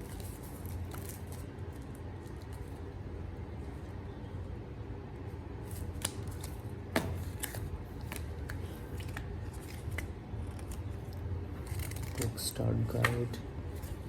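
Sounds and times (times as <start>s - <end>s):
steady low hum: 0.0s - 14.0s
paper and card rustling: 5.6s - 14.0s.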